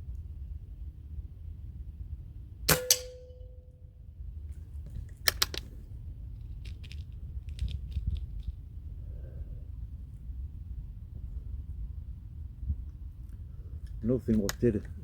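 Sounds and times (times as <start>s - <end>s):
air rifle firing: 2.7s - 3.4s
rifle action metallic clicks: 5.2s - 5.7s.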